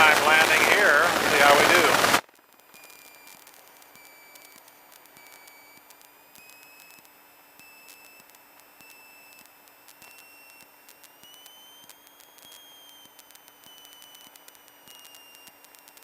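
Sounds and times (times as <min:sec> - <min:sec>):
low hiss: 0:00.0 - 0:02.2
high-pitched electrical whine: 0:00.0 - 0:16.0.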